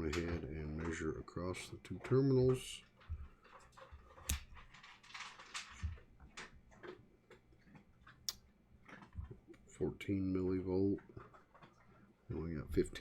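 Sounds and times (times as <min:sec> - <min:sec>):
dog chewing food: 0:05.9 - 0:09.5.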